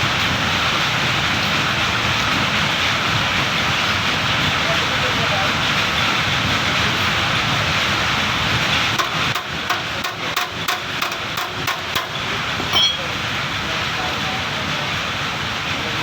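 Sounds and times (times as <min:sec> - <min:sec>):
hammer tapping on metal: 0:09.0 - 0:13.0
metallic ring: 0:12.0 - 0:13.1.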